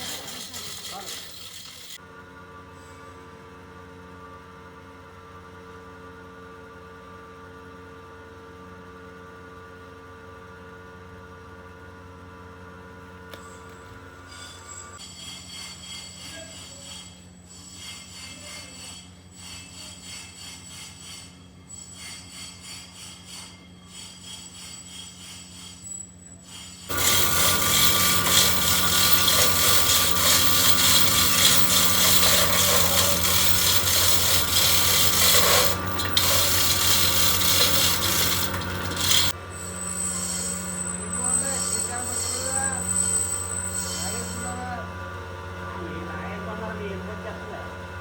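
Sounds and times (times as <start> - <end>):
grinding on metal: 0.0 - 2.0, 26.9 - 44.6
metalworking machine humming: 0.0 - 2.0, 26.9 - 44.7.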